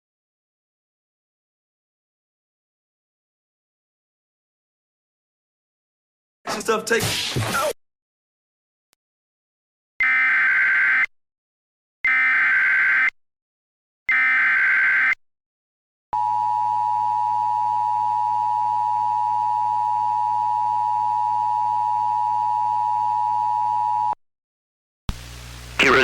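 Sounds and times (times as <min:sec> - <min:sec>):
data header bursts: 0:25.7 - 0:26.0.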